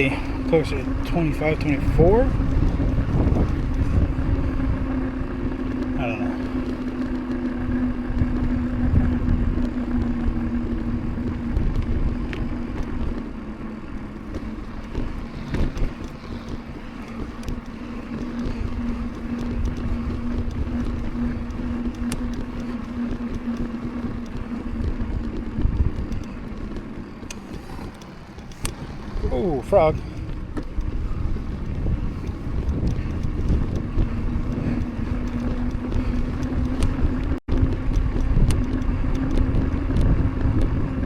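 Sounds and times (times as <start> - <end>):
bike clicks and rattles: 0.0 - 41.0
bike tyres humming on pavement: 0.0 - 41.0
wind rumbling on microphone: 0.0 - 41.0.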